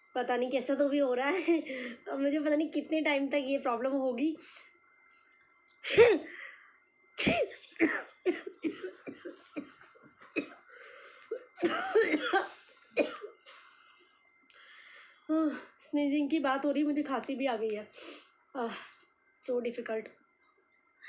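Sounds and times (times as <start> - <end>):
woman coughing: 5.8 - 6.3, 7.2 - 10.7, 11.3 - 13.4.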